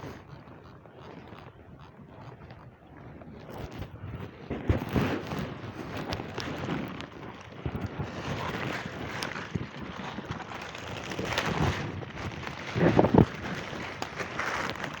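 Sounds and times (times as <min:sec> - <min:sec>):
wind buffeting microphone: 0:00.0 - 0:15.0
steady rustling: 0:03.4 - 0:15.0.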